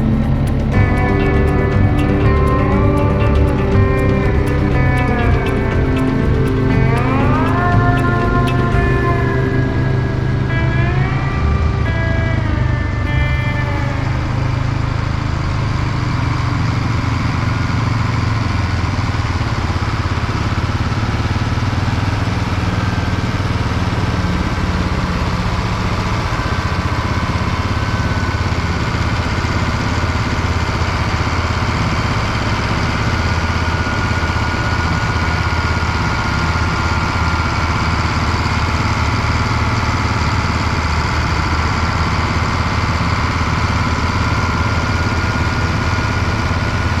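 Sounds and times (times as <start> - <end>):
faint high whine: 0.0 - 18.7
diesel engine running: 0.0 - 47.0.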